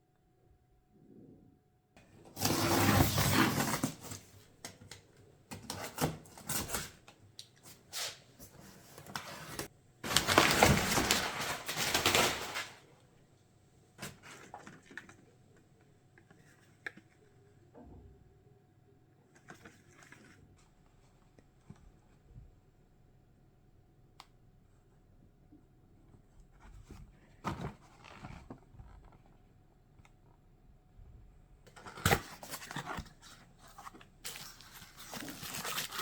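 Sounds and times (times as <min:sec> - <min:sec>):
packaging crinkling and rustling: 0:02.3 - 0:12.9, 0:31.7 - 0:36.0.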